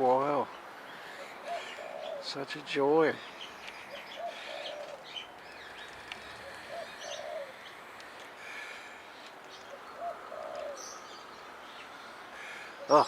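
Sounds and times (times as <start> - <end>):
small birds chirping: 0.0 - 13.0
dove cooing: 1.0 - 2.3, 3.8 - 8.9, 9.7 - 11.1.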